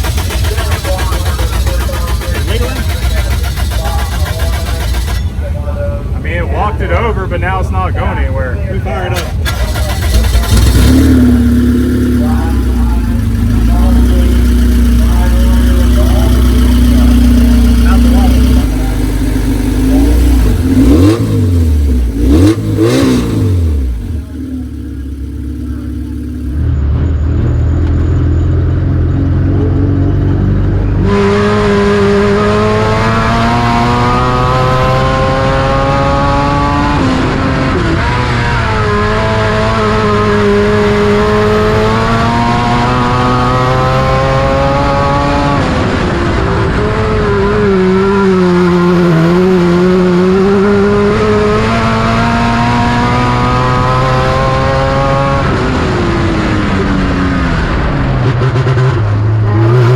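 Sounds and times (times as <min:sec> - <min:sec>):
race car engine running hard: 0:00.0 - 0:59.9.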